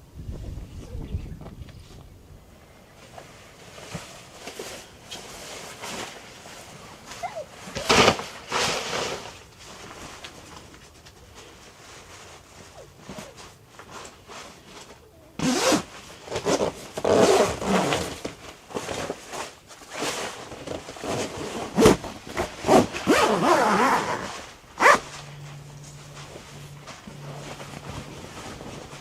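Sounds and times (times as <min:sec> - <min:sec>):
zipper being pulled: 0:15.4 - 0:18.3, 0:19.9 - 0:25.1
faint low hum: 0:20.0 - 0:29.0.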